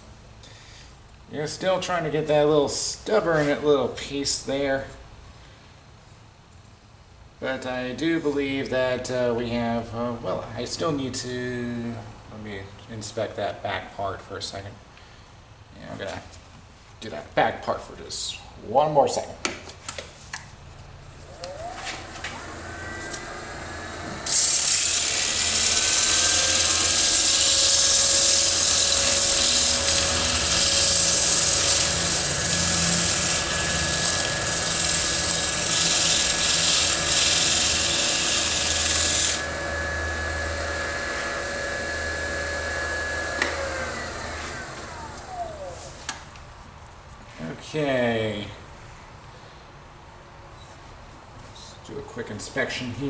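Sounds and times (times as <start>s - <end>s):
lathe motor whining: 21.1s - 46.2s.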